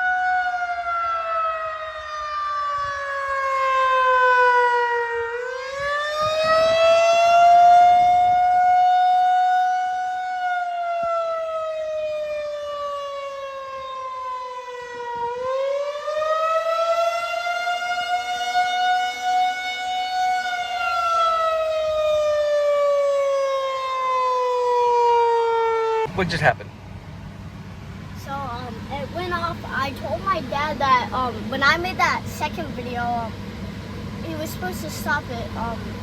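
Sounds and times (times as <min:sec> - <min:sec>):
tornado siren wailing: 0:00.0 - 0:26.3.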